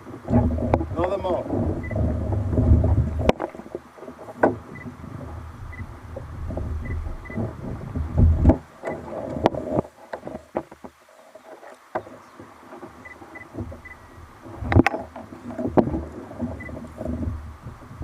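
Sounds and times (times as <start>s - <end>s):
low rumble: 0.0s - 3.4s, 4.8s - 8.6s
knocks and taps on kayak hull: 0.1s - 5.4s, 6.1s - 11.0s, 11.6s - 18.0s.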